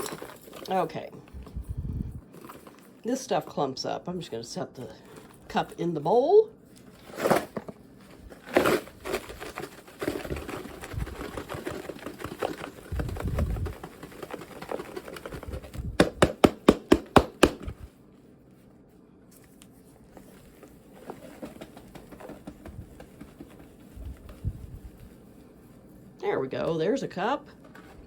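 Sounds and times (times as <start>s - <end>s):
powder crunching and scraping: 6.7s - 17.7s
sharp taps: 16.0s - 17.7s.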